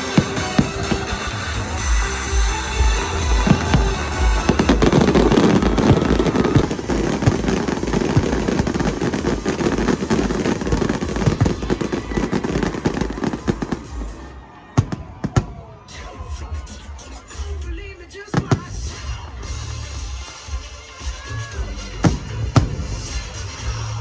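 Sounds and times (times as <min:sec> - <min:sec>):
music with pulsing beat: 0:00.0 - 0:14.3
fireworks bangs and crackles: 0:00.0 - 0:16.4, 0:17.6 - 0:24.0.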